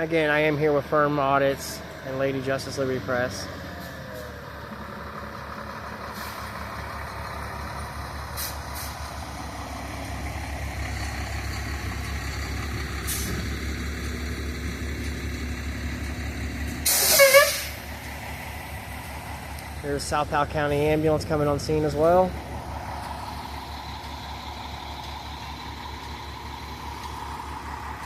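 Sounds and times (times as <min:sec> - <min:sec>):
heavy truck engine rumbling: 0:00.0 - 0:28.0
air brakes hiss: 0:16.8 - 0:17.8.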